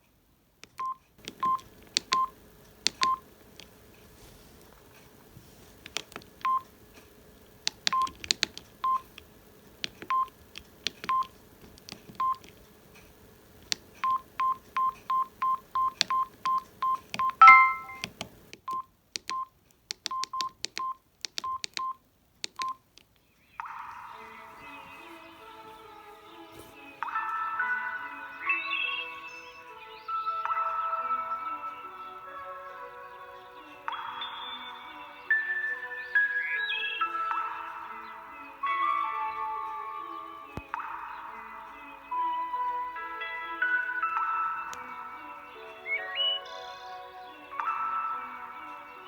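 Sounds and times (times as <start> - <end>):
phone keypad beeps: 0.8 - 3.2, 5.9 - 6.7, 7.8 - 9.2, 9.9 - 11.4, 12.1 - 12.5, 13.7 - 22.8
multi-pitched phone tone: 14.1 - 18.1.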